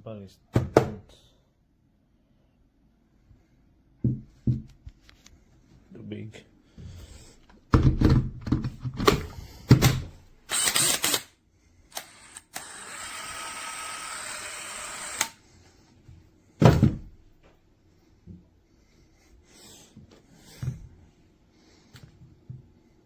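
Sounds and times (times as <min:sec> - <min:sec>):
drill handling clicks and clunks: 0:08.1 - 0:11.3, 0:11.9 - 0:15.4
steady drill sound: 0:10.5 - 0:11.3, 0:11.9 - 0:15.4
thump: 0:16.6 - 0:17.1.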